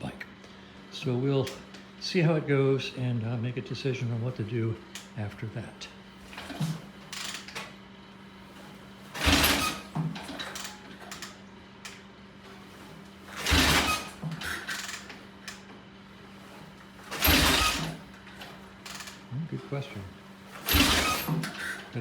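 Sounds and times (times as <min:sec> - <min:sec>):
motorcycle engine kick start scrape: 0:08.6 - 0:10.7, 0:12.6 - 0:15.2, 0:16.4 - 0:19.2, 0:20.5 - 0:22.0.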